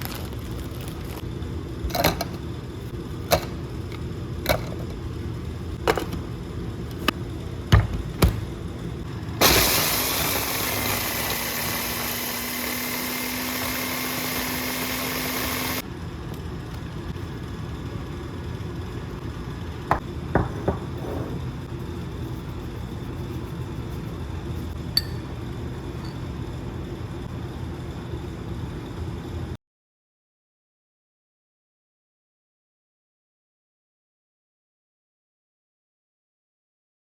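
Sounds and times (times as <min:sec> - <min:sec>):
low humming noise: 0:00.0 - 0:29.6.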